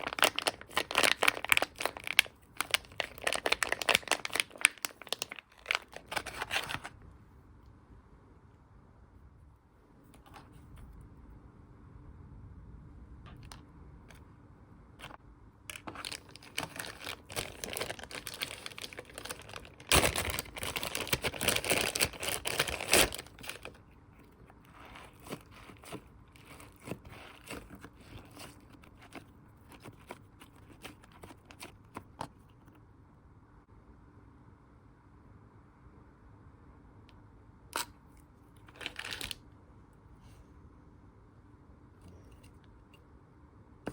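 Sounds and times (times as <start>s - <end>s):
plastic packaging crinkling: 0.0s - 7.0s, 15.0s - 32.6s, 38.6s - 39.4s.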